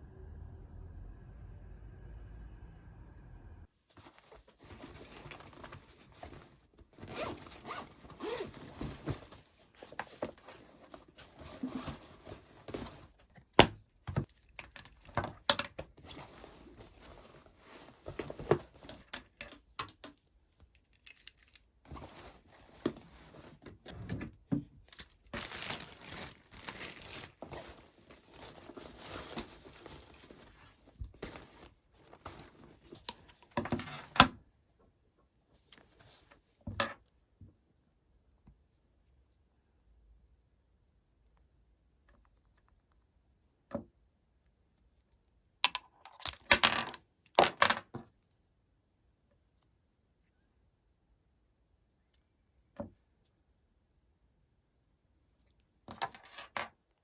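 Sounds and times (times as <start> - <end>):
rustling and crinkling: 3.7 - 34.2, 35.3 - 36.8.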